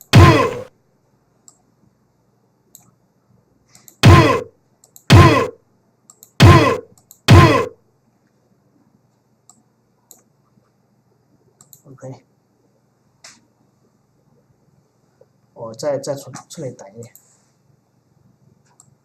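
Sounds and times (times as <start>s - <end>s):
cartoon sound effect falling pitch: 0.0s - 0.6s, 4.0s - 4.5s, 6.4s - 7.7s.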